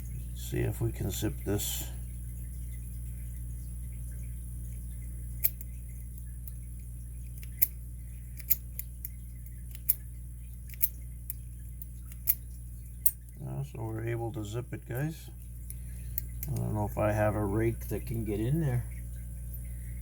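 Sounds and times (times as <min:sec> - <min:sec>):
lock pick clicking in padlock: 0:08.4 - 0:10.0, 0:10.7 - 0:11.4.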